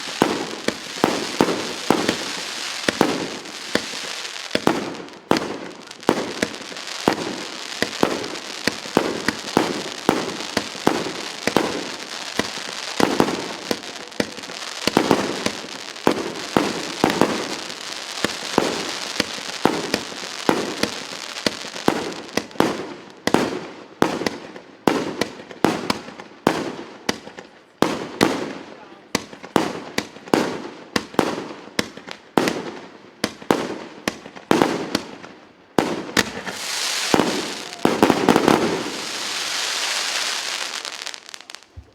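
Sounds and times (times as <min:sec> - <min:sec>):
hiss and crackle of bursting stars: 0:00.0 - 0:22.6, 0:36.2 - 0:41.9
firework cake firing pops: 0:35.8 - 0:41.9.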